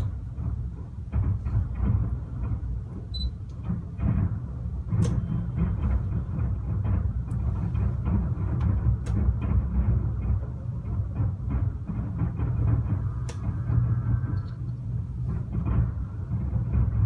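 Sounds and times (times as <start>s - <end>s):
fireworks booming: 3.7s - 17.0s.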